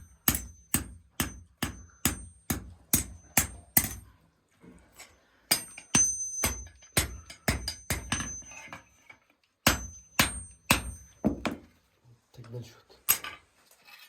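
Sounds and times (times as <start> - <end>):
hammer striking metal on anvil: 0.0 - 4.1, 5.5 - 9.0, 9.6 - 11.6.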